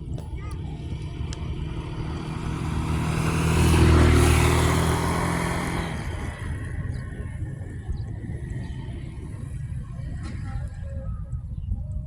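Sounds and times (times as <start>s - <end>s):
vehicle passing by: 0.3s - 10.8s.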